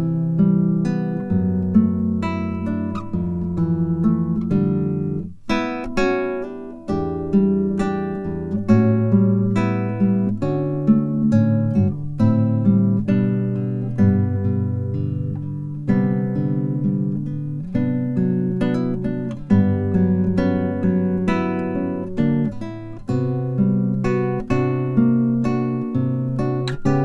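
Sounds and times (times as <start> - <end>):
acoustic guitar playing: 0.0 - 27.0.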